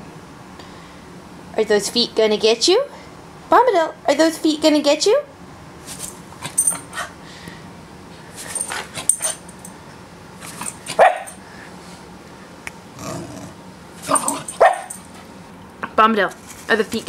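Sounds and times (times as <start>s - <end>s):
puppy barking and yipping: 10.6s - 11.4s, 14.1s - 15.1s.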